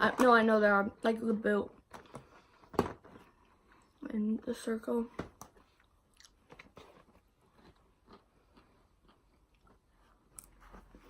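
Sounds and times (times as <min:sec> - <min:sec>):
person chewing food: 0:05.6 - 0:11.0.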